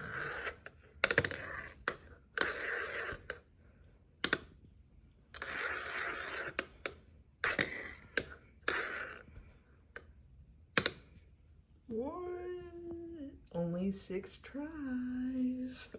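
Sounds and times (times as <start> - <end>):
spinning top scraping whir: 0.0 - 3.4, 5.4 - 6.7.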